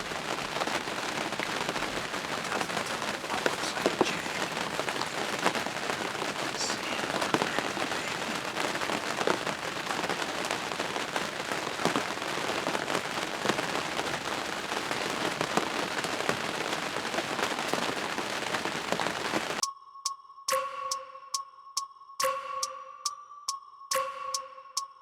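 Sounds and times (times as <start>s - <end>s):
rain pattering: 0.0s - 19.6s.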